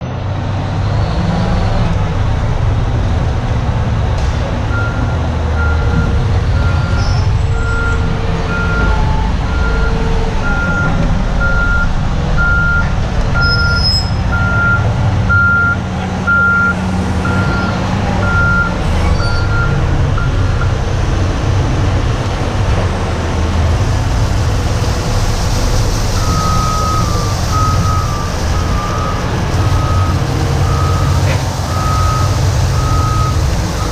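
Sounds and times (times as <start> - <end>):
diesel engine running: 0.0 - 33.9
reversing alarm beeping: 4.7 - 20.8, 26.2 - 33.9.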